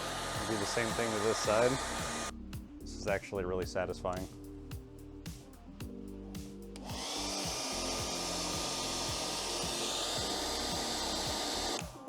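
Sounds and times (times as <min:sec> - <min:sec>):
small electric fan motor whirring: 0:00.0 - 0:02.3, 0:06.7 - 0:12.0.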